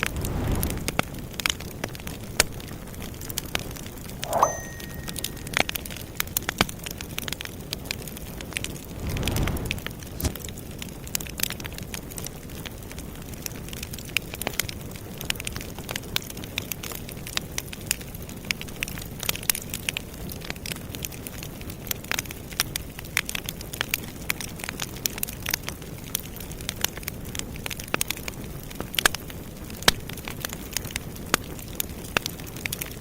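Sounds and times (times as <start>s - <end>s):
low rumble of flames: 0.0s - 3.8s, 8.0s - 17.0s
campfire crackling and popping: 0.1s - 2.1s.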